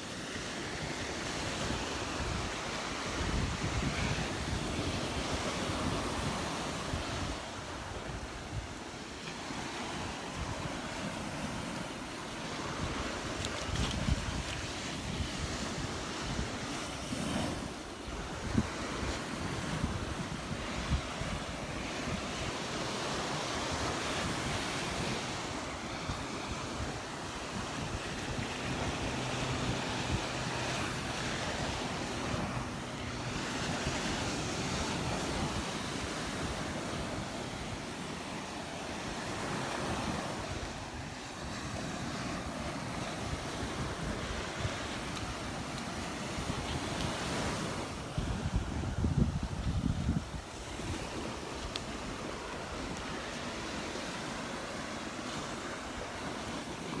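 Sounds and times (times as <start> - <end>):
surf breaking on beach: 0.0 - 57.0
wind buffeting microphone: 0.0 - 57.0.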